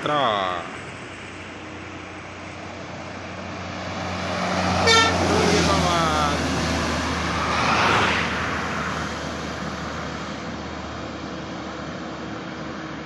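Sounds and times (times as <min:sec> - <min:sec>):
bus passing close by: 0:00.0 - 0:13.0.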